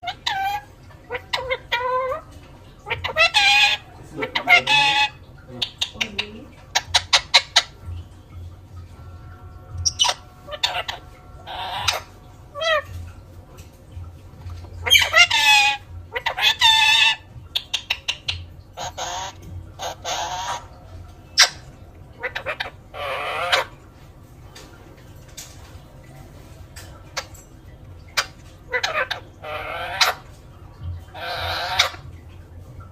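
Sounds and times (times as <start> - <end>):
parrot screeching: 0.0 - 7.7, 9.8 - 13.0, 14.8 - 23.8, 28.2 - 30.3, 31.1 - 32.1
parrot warbling and talking: 0.0 - 7.8, 9.2 - 13.0, 14.7 - 23.8, 28.0 - 30.4, 31.1 - 32.1
parrot chirping: 0.0 - 13.7, 14.6 - 24.1, 26.4 - 30.4, 31.0 - 32.2.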